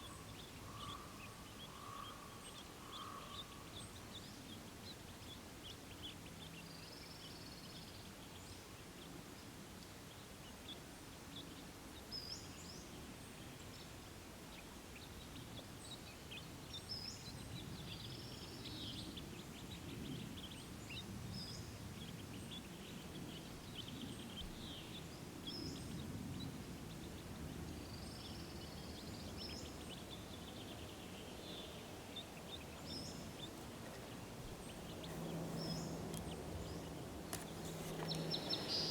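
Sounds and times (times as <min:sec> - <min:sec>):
small birds chirping: 0:00.0 - 0:38.9
faint low rumble: 0:17.7 - 0:38.9.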